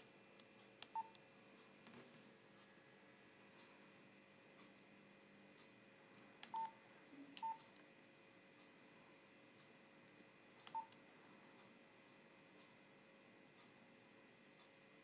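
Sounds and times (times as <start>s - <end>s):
keypad button clicks and beeps: 0.8s - 1.2s, 6.4s - 6.7s, 7.4s - 7.6s, 10.7s - 11.0s.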